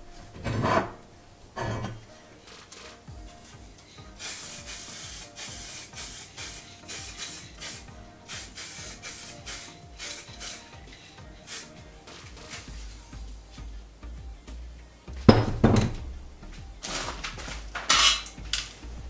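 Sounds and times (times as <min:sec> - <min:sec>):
spray can hissing bursts: 0:02.4 - 0:13.3.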